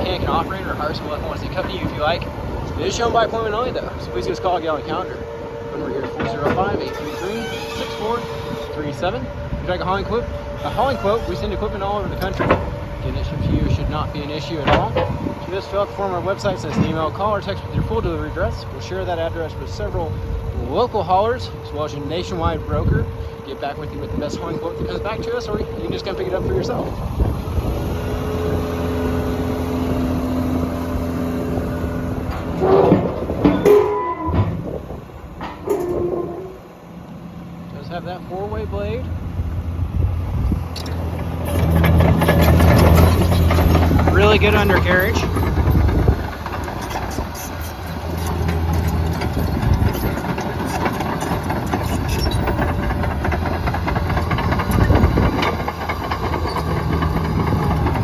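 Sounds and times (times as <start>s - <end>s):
bulldozer diesel engine running: 0.0s - 58.0s
clattering rush: 10.3s - 15.5s, 40.8s - 58.0s.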